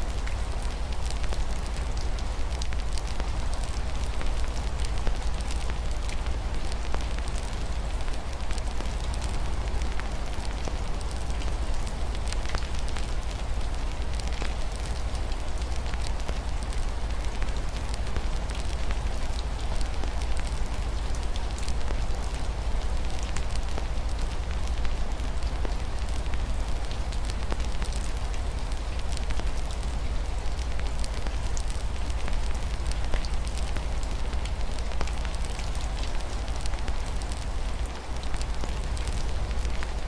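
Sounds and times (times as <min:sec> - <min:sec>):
constant low rumble: 0:00.0 - 0:40.0
rain on a window: 0:00.0 - 0:40.0
wood fire crackling: 0:22.9 - 0:40.0.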